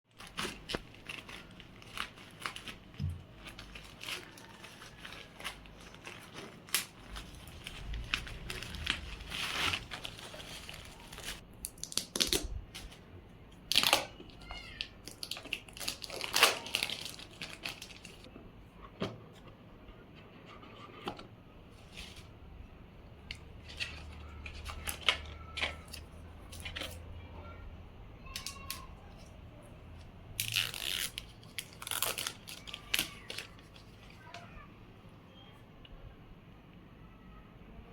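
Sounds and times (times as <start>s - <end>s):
packaging rustling and crinkling: 0.1s - 13.0s, 14.7s - 18.3s, 23.3s - 27.1s, 30.4s - 34.3s
plastic and paper tearing: 0.1s - 13.0s, 14.8s - 18.3s, 23.5s - 27.2s, 30.4s - 34.3s.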